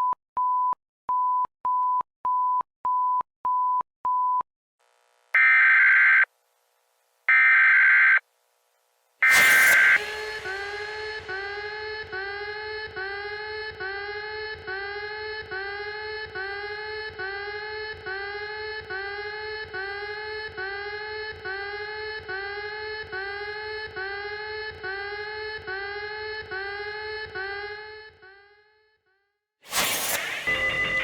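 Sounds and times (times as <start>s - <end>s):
emergency alert alarm tone: 9.2s - 12.3s, 29.7s - 31.0s.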